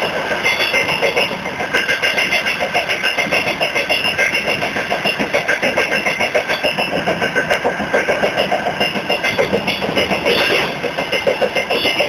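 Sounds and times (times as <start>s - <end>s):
train wheels rumbling on rails: 0.0s - 12.0s.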